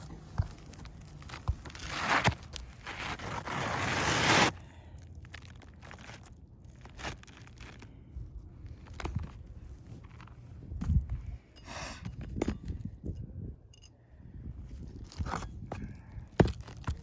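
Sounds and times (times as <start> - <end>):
roof shingle scraping: 0.1 - 4.5.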